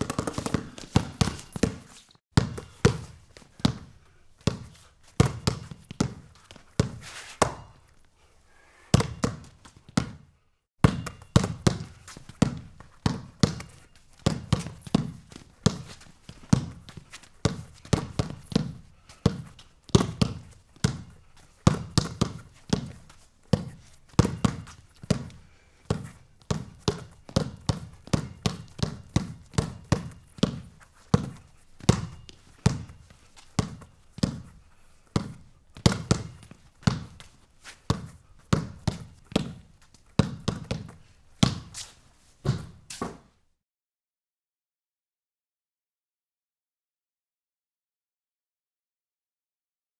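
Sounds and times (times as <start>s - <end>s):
ball bouncing on hard surface: 0.0s - 3.9s, 4.5s - 7.8s, 9.0s - 10.2s, 10.8s - 21.1s, 23.6s - 33.0s, 33.6s - 34.5s, 35.2s - 37.3s, 40.2s - 41.8s, 42.4s - 43.3s.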